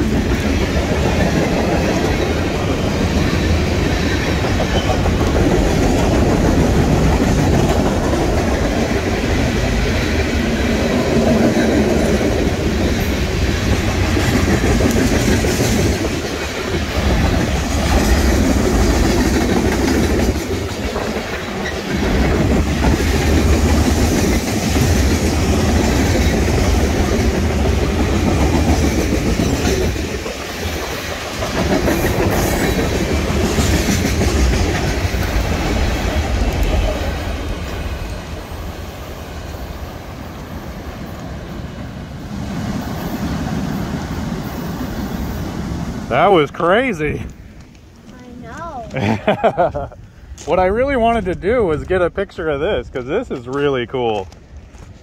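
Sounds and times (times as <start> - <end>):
wheels clacking over rail joints: 0.0 - 40.1
freight train rumbling: 0.0 - 55.0.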